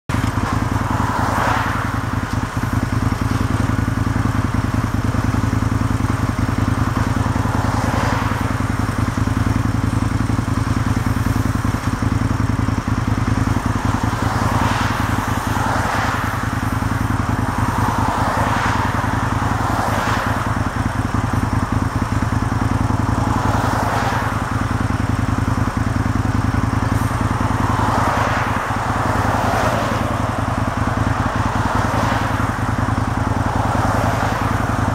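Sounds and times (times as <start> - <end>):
excavator diesel engine: 0.1 - 34.9.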